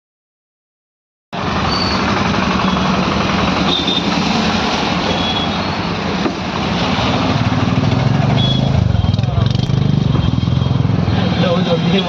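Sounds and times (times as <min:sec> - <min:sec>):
vehicle engine running: 0:01.4 - 0:05.2.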